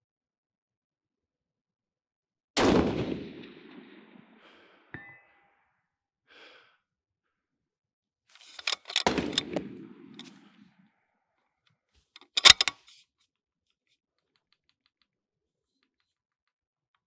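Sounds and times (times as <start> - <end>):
rifle shot: 8.6 - 10.1, 12.4 - 12.7.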